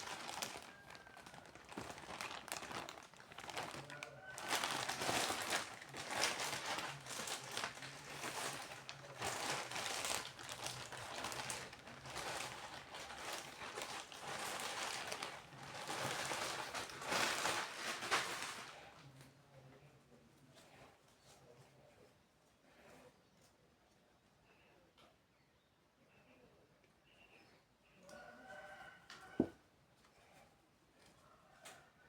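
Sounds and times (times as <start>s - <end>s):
packaging crinkling and rustling: 0.0s - 19.0s.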